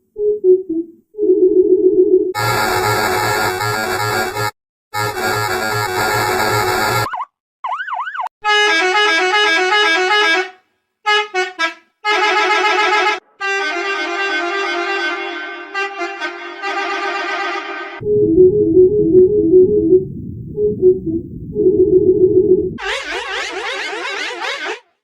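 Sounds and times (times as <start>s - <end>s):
multi-note musical bus horns: 2.4s - 7.1s, 8.4s - 18.0s
warbling horn wail: 2.4s - 7.1s, 11.1s - 18.1s, 22.8s - 25.0s.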